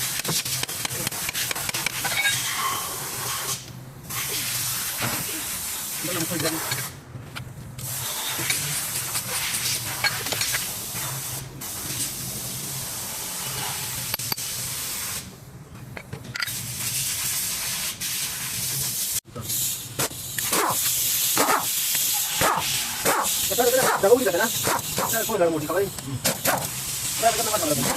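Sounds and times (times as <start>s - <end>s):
steady hissing spray: 2.9s - 6.9s, 10.6s - 15.3s, 16.7s - 27.9s.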